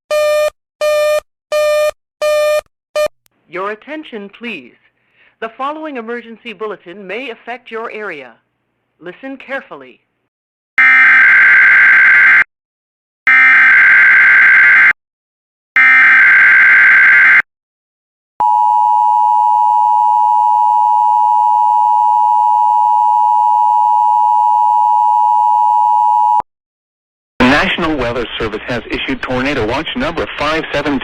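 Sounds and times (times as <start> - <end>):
steady attention signal tone: 18.4 - 26.4.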